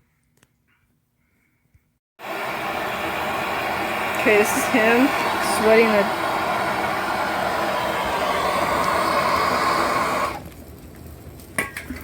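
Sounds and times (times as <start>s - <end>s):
gas torch hissing: 2.2s - 10.5s.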